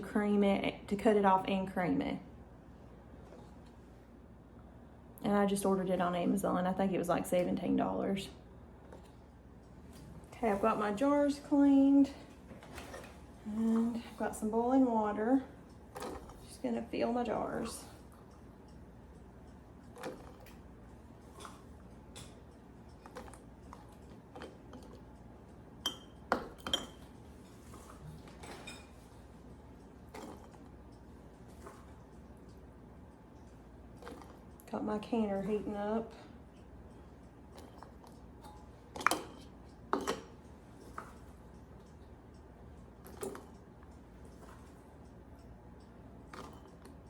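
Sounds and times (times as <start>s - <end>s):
glass jars clinking: 25.8s - 27.0s.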